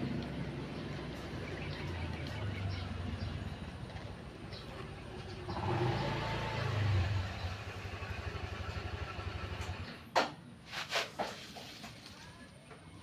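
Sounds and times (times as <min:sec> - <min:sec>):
small engine running: 0:05.3 - 0:10.0.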